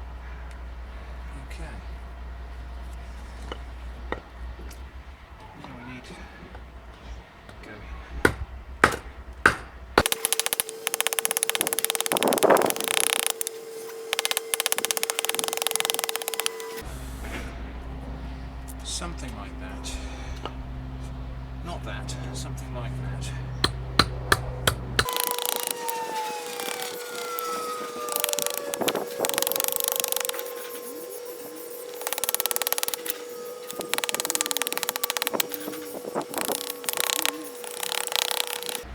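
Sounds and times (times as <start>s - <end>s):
carving tool rasping wood: 8.2s - 16.8s, 23.6s - 38.9s
hatchet chopping wood: 8.3s - 16.8s, 23.6s - 30.6s, 31.8s - 38.9s
steady hum: 8.3s - 38.9s
rapid even clicks: 10.0s - 16.8s, 23.6s - 38.9s
faint falling whine: 25.0s - 38.9s.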